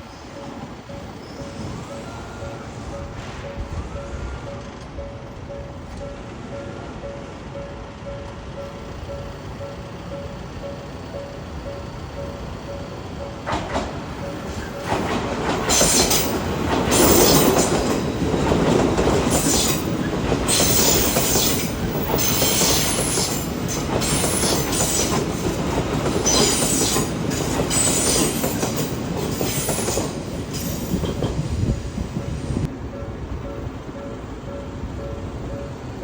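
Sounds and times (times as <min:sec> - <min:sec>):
train rail rumble: 0:00.0 - 0:36.0
wheels squealing: 0:00.1 - 0:04.7, 0:10.7 - 0:31.7.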